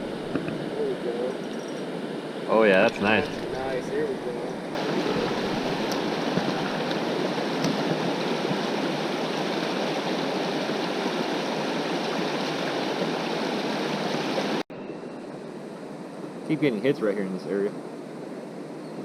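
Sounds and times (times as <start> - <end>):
river water rushing: 0.0 - 14.6.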